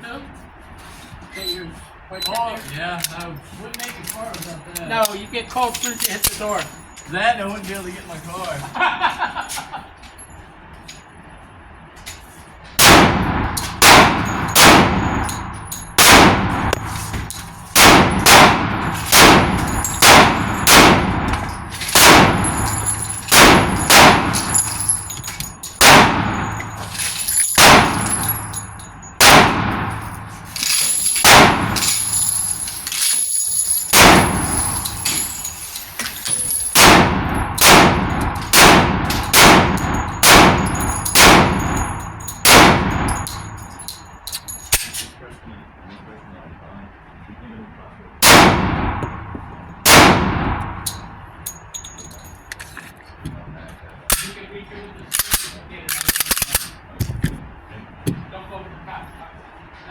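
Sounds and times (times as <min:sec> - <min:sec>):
handgun shots: 0:12.8 - 0:22.6, 0:23.3 - 0:24.6, 0:25.8 - 0:26.7, 0:27.6 - 0:28.2, 0:29.2 - 0:30.0, 0:30.6 - 0:31.9, 0:36.8 - 0:43.3.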